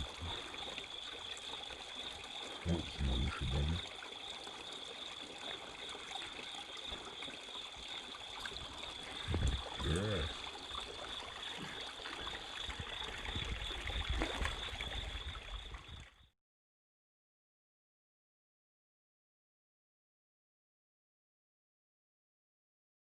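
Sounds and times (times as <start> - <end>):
water trickling: 0.0 - 16.3.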